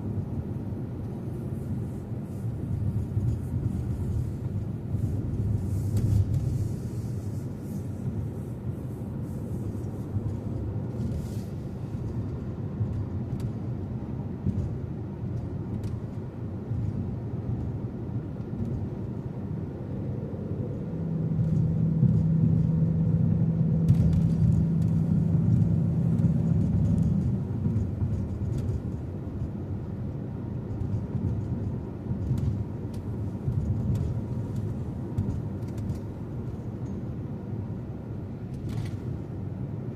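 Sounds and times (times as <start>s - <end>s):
car road and engine rumble: 0.0s - 39.9s
steady low hum: 0.0s - 39.9s.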